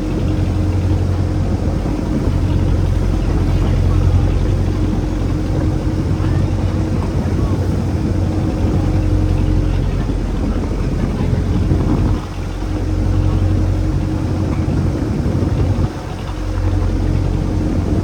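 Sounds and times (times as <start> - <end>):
boat engine running: 0.0 - 18.0.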